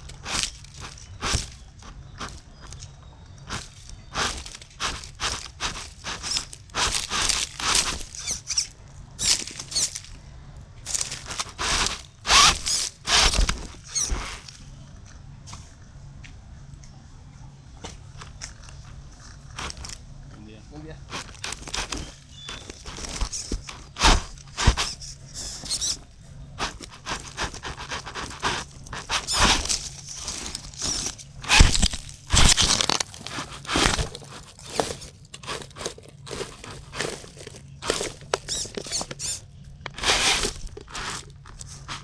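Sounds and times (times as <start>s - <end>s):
rc car crunching over rock: 0.0s - 15.0s, 18.1s - 20.0s, 20.9s - 42.0s
faint low hum: 0.0s - 42.0s.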